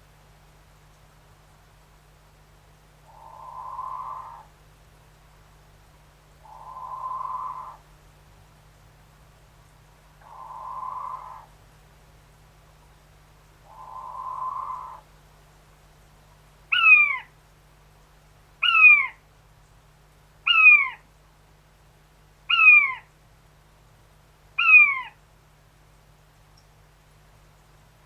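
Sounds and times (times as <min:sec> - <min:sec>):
quail whistled calls: 0:03.1 - 0:04.5, 0:06.4 - 0:07.8, 0:10.2 - 0:11.5, 0:13.7 - 0:15.0, 0:16.7 - 0:17.3, 0:18.6 - 0:19.2, 0:20.5 - 0:21.0, 0:22.5 - 0:23.1, 0:24.6 - 0:25.2.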